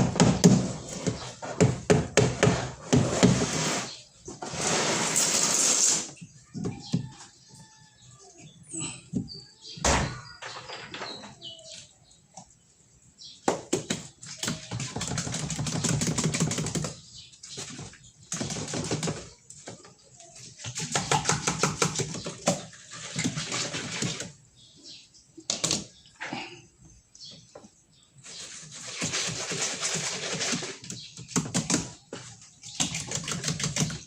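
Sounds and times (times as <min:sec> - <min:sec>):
fast clicking and scraping: 0:28.3 - 0:31.8, 0:32.7 - 0:34.0.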